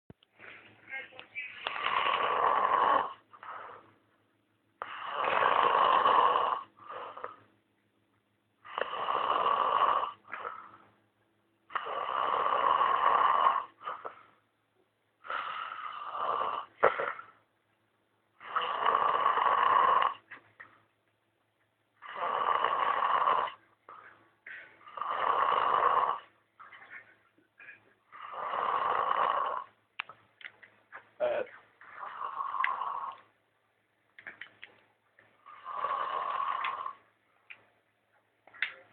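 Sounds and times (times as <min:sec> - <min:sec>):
person snoring: 0:01.6 - 0:03.9, 0:04.8 - 0:07.4, 0:08.6 - 0:10.8, 0:11.7 - 0:14.2, 0:15.2 - 0:17.3, 0:18.4 - 0:20.3, 0:22.0 - 0:24.1, 0:24.8 - 0:26.9, 0:28.1 - 0:29.8, 0:31.2 - 0:33.3, 0:35.4 - 0:37.0.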